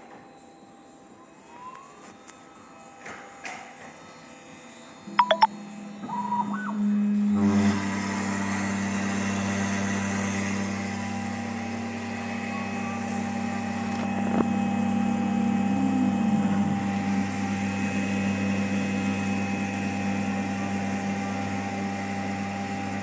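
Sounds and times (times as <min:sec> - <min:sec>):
milling machine motor hum: 0:04.6 - 0:23.0
deeper motor hum: 0:05.2 - 0:23.0.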